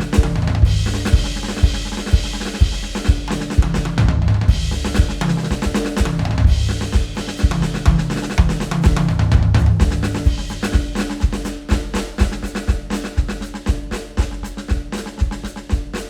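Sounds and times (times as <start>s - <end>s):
sustained bass line: 0.0s - 1.4s, 4.0s - 5.6s, 6.2s - 7.2s, 9.0s - 10.4s
drum kit beat: 0.0s - 16.0s.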